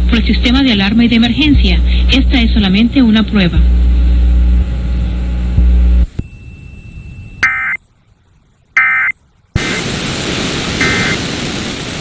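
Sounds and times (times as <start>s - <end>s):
low audio hum: 0.0s - 11.4s
loud static hiss: 0.0s - 12.0s
data tone bursts: 6.2s - 7.8s, 8.8s - 9.8s, 10.8s - 11.2s.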